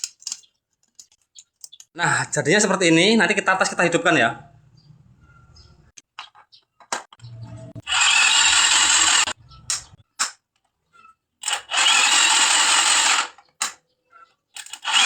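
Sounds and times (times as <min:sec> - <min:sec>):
drill-like motor whirring: 0:07.8 - 0:09.4, 0:11.4 - 0:13.4, 0:14.7 - 0:15.0.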